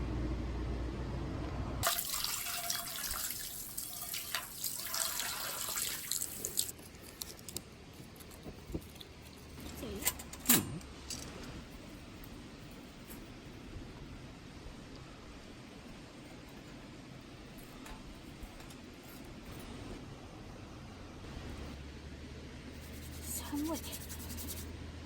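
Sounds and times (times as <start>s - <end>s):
water running and splashing: 1.8s - 6.8s.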